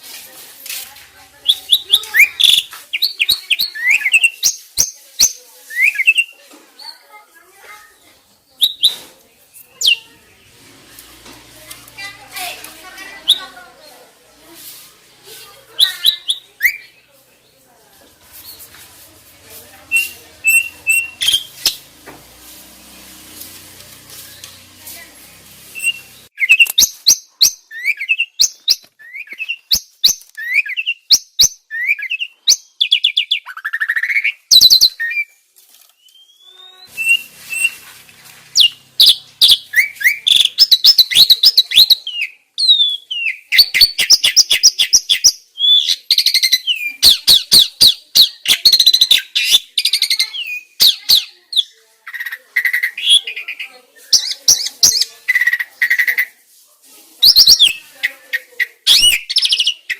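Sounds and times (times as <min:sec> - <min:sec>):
starling song: 0:36.0 - 0:41.2.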